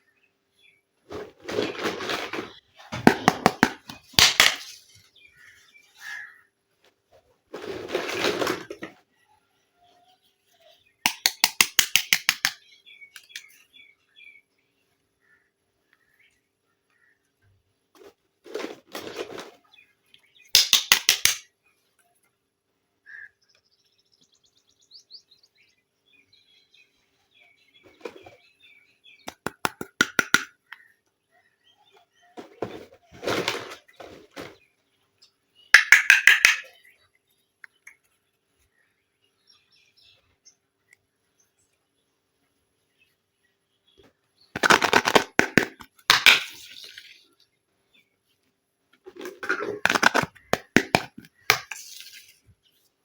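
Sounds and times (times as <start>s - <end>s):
plastic toy parts handled: 44.6s - 47.2s, 49.1s - 52.4s.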